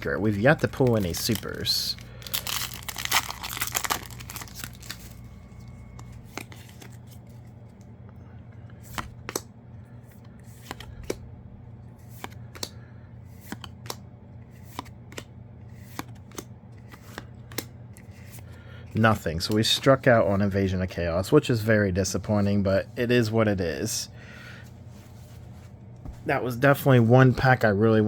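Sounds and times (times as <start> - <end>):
foil pack crinkling: 0.0 - 5.3
trading cards snapping: 12.1 - 12.8.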